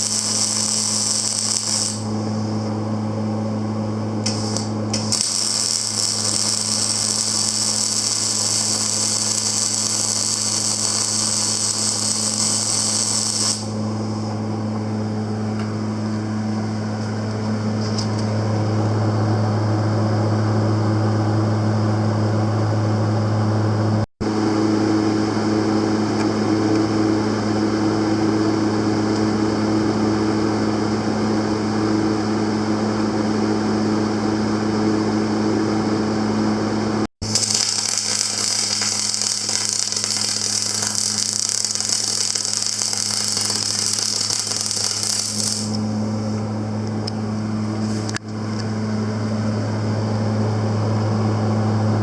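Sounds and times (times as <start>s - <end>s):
high hiss: 0.0s - 2.2s, 4.3s - 13.8s, 37.2s - 45.9s
welding machine humming: 0.0s - 2.8s, 4.2s - 14.3s, 37.2s - 46.4s.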